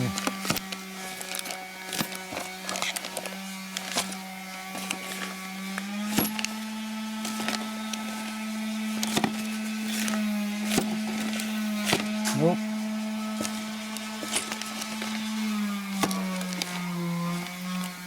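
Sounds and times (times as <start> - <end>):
small metal parts clicking: 0.1 - 4.2.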